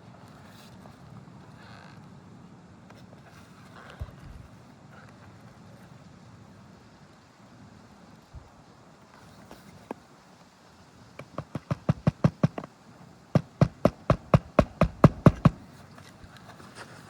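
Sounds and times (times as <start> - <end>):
hammer driving nails: 11.2 - 12.7, 13.4 - 15.6.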